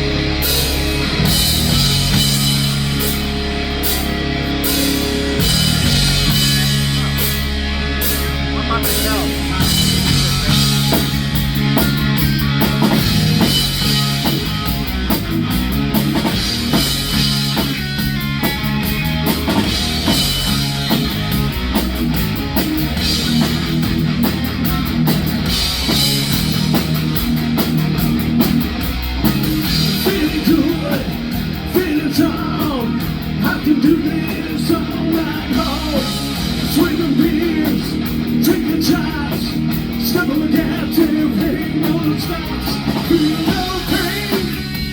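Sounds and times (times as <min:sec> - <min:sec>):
bass guitar: 0:00.0 - 0:44.9
drum kit: 0:00.0 - 0:44.9
electric guitar: 0:00.0 - 0:44.9
person singing: 0:29.8 - 0:44.9.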